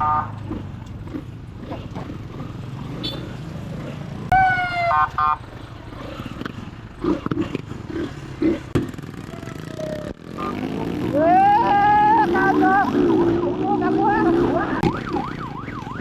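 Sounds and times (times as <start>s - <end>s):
motorcycle engine running: 0.0s - 15.7s
electronic police siren: 4.3s - 5.4s, 14.6s - 16.0s.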